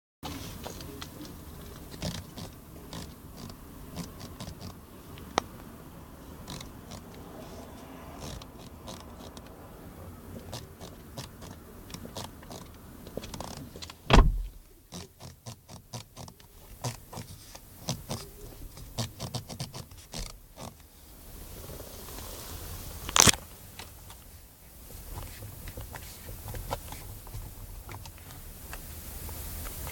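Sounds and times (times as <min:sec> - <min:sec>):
door handle creaking and clicking: 0:10.5 - 0:14.7
loud thumps: 0:14.1 - 0:14.7.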